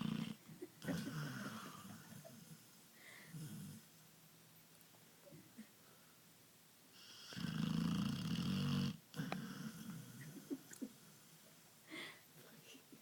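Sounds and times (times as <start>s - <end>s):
dog snoring: 0.0s - 2.6s, 7.0s - 10.4s.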